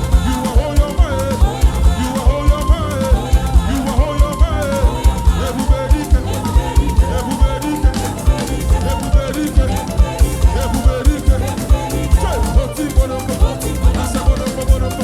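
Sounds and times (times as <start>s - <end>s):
fast drum beat: 0.0s - 15.0s
live band playing gospel music: 0.0s - 15.0s.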